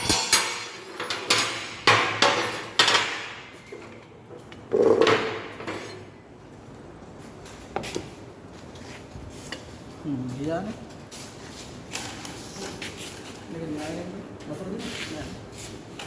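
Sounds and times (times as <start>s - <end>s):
metal clatter: 0.0s - 4.0s.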